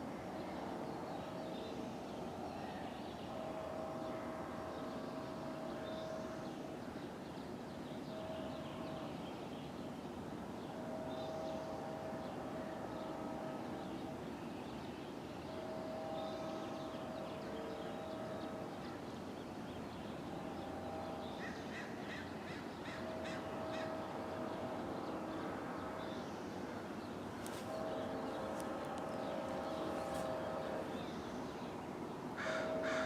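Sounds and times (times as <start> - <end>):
distant train horn blasts: 0.0 - 33.0
crows cawing: 21.4 - 24.0, 32.4 - 33.0.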